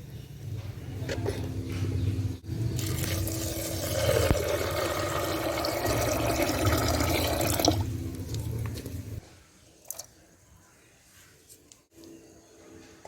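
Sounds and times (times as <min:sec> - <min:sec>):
water pouring into vessel: 0:02.8 - 0:09.2.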